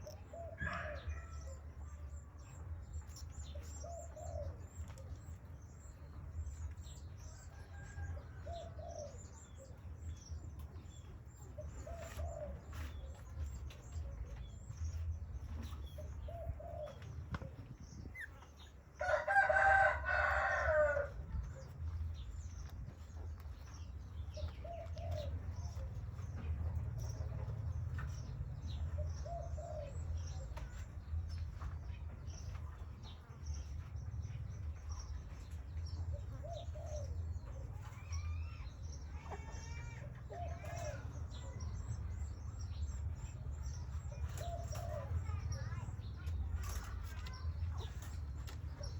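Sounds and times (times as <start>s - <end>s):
bird cooing: 0.2s - 1.3s.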